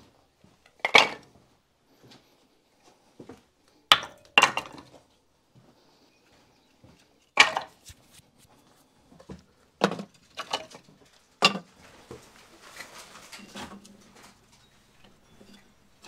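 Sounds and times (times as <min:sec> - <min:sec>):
wood clattering: 0:00.7 - 0:01.3, 0:03.9 - 0:05.0, 0:06.8 - 0:08.5, 0:09.2 - 0:16.0.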